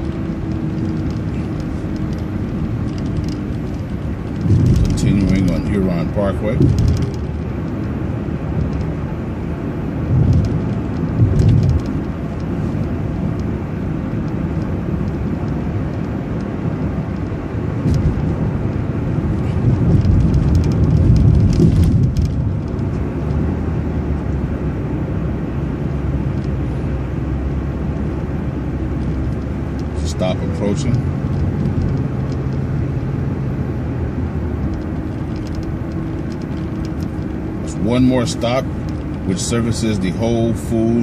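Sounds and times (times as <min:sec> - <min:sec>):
bus engine and road rumble: 0:00.0 - 0:41.0
light rattles: 0:34.1 - 0:40.5.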